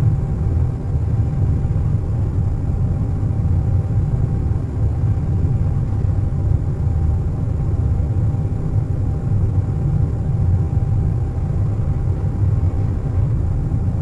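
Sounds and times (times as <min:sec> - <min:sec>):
engines rumbling and air rushing: 0:00.0 - 0:14.0.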